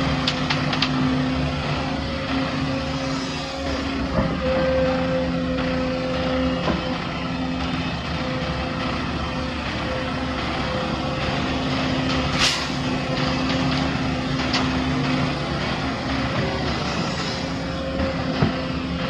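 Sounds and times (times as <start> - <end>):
heavy diesel machinery running: 0.0 - 19.0.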